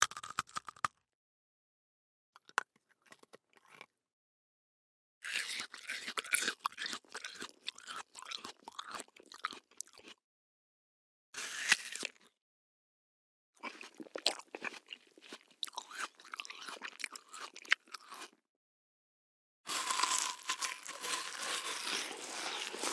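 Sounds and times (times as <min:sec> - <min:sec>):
person chewing crunchy food: 0:05.3 - 0:10.2, 0:13.6 - 0:18.4, 0:19.7 - 0:22.9.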